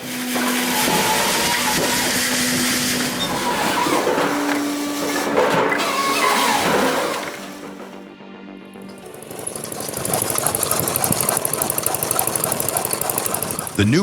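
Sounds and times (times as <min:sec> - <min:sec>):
loud machine noise: 0:08.8 - 0:14.0
motor hum: 0:08.8 - 0:14.0.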